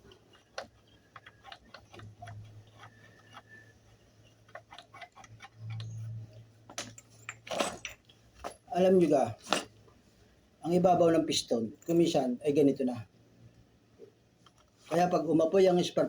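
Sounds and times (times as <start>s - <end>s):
small metal parts clicking: 4.3s - 8.6s.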